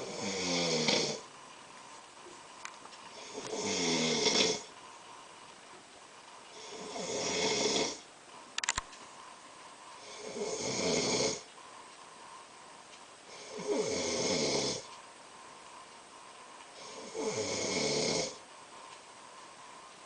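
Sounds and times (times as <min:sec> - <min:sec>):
man snoring: 0:00.0 - 0:01.3, 0:03.1 - 0:04.7, 0:06.5 - 0:08.0, 0:10.0 - 0:11.5, 0:13.3 - 0:14.9, 0:16.8 - 0:18.4.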